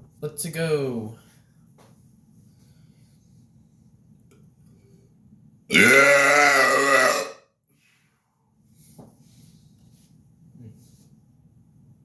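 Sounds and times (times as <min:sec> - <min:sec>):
man burping loudly: 0:05.7 - 0:07.4.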